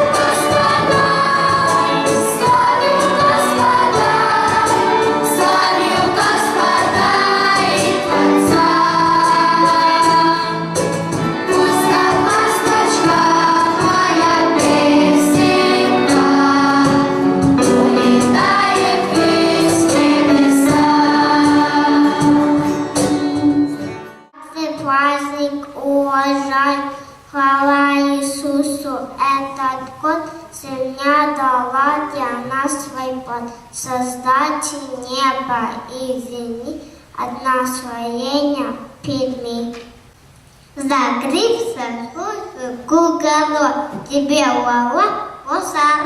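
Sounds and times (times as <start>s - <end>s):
percussion beat: 0.0s - 23.8s
choir singing: 0.0s - 24.3s
instrumental accompaniment: 0.0s - 24.5s.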